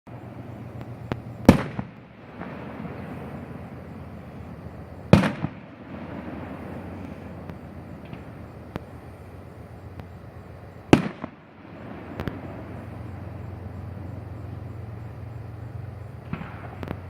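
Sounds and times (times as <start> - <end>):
fireworks bangs and cracks: 0.1 - 9.1, 10.8 - 13.3, 16.2 - 17.0
low background noise: 0.1 - 17.0.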